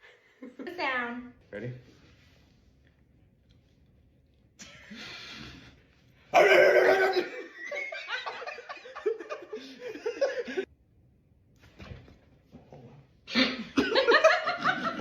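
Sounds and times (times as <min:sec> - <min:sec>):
loud drawn-out vocal cry: 0:06.3 - 0:07.5
person laughing: 0:06.4 - 0:10.6.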